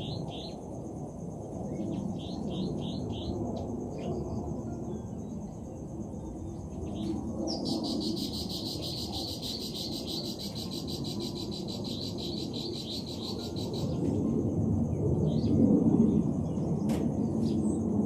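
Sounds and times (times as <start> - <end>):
insect trilling: 6.0 - 14.2.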